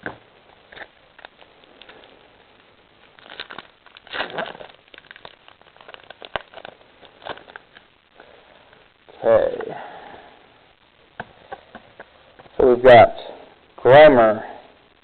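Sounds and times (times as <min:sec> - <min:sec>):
foil wrapper crinkling: 0:00.6 - 0:08.8.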